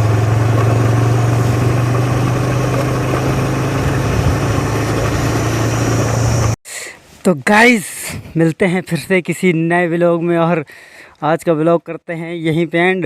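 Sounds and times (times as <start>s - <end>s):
motorcycle engine running: 0.0s - 6.6s
road and wind noise: 0.0s - 6.6s.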